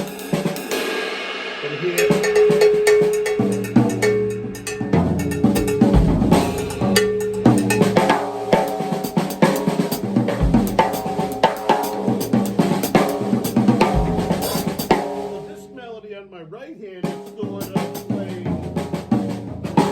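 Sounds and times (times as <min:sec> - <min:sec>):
cymbal or hi-hat strokes: 0:00.0 - 0:15.6
snare and tom strokes: 0:00.0 - 0:15.6
deep bass drum hits: 0:03.3 - 0:08.7, 0:10.0 - 0:11.4, 0:13.6 - 0:15.2.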